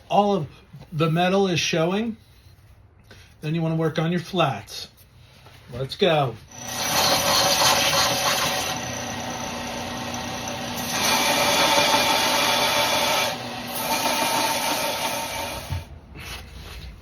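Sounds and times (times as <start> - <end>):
power grinder grinding: 6.5 - 15.9.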